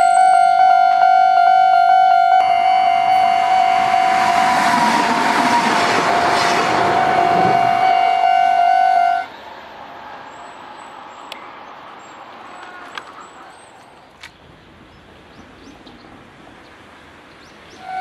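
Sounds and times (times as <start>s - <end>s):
level crossing alarm tone: 0.0s - 9.3s.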